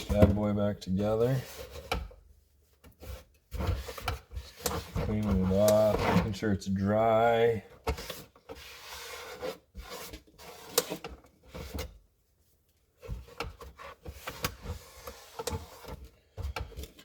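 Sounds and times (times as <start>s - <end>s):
light clicks and scrapes of handling: 0.1s - 6.5s, 7.7s - 12.0s, 12.6s - 17.0s
rubbing on plastic housing: 0.1s - 6.5s, 13.0s - 16.5s.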